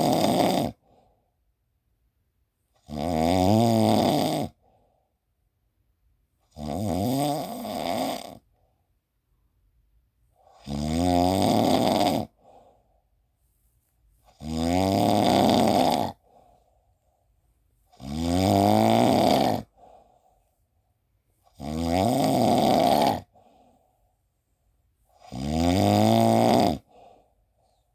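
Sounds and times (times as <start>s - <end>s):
loud snoring: 0.0s - 0.8s, 2.8s - 4.6s, 6.5s - 8.4s, 10.4s - 12.4s, 14.3s - 16.2s, 17.9s - 19.8s, 21.5s - 23.4s, 25.2s - 27.0s
faint breath out: 12.4s - 13.1s, 19.7s - 20.6s, 26.8s - 27.9s.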